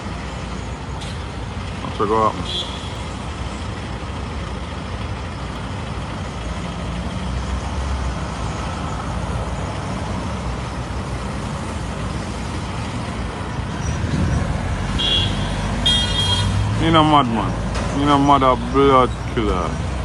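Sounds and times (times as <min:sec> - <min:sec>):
street traffic: 0:00.0 - 0:20.0
vehicle engine running: 0:00.0 - 0:20.0.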